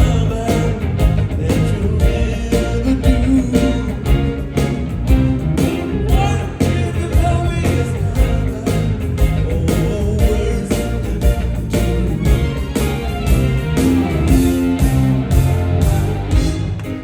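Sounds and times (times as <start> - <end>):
person singing: 0.0 - 4.4, 6.0 - 12.8
bass guitar: 0.0 - 17.0
drum beat: 0.0 - 17.0
electric guitar: 0.0 - 17.0.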